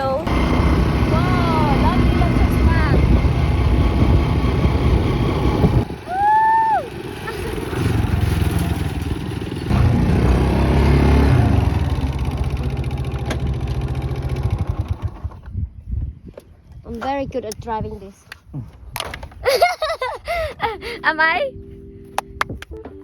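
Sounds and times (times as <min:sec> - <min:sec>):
small motorbike engine running: 0:00.0 - 0:15.5
wind noise: 0:01.0 - 0:06.3, 0:14.5 - 0:22.8.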